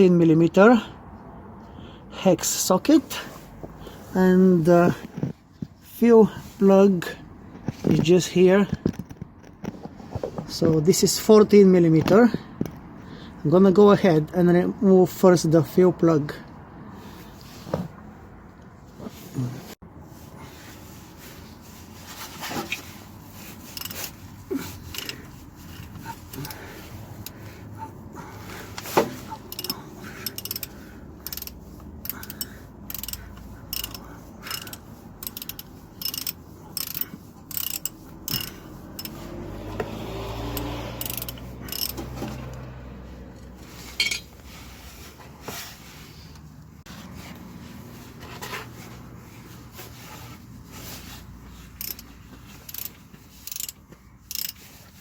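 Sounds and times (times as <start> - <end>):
ratchet wrench clicking: 23.7 - 24.2, 24.8 - 26.6, 29.2 - 39.8, 40.4 - 42.6, 51.8 - 54.7
metal tools knocking: 43.9 - 44.4.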